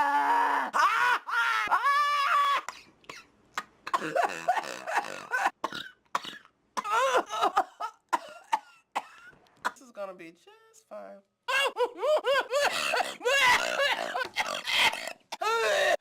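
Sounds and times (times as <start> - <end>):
woman coughing: 3.9 - 9.8.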